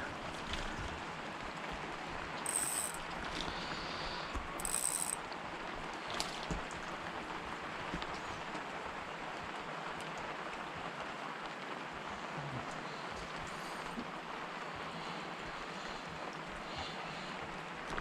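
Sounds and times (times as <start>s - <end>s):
fishing reel ratcheting buzz: 2.4s - 3.0s, 4.6s - 5.2s.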